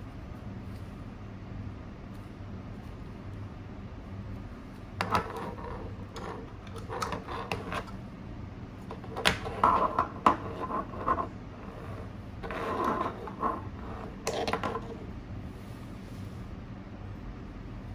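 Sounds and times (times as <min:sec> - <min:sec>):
low steady hum: 0:00.0 - 0:17.9
sharp clicks and knocks: 0:08.9 - 0:15.0.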